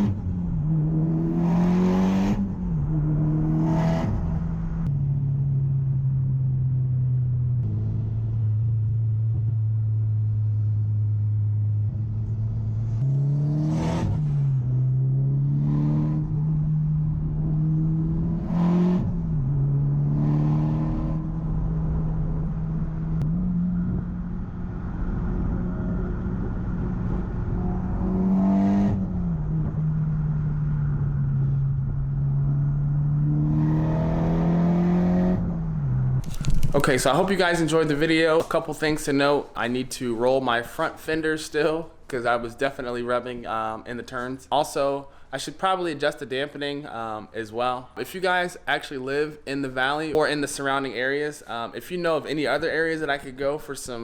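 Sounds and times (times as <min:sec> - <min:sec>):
car engine revving through gears: 0:00.0 - 0:04.9, 0:07.5 - 0:09.5, 0:11.7 - 0:37.6.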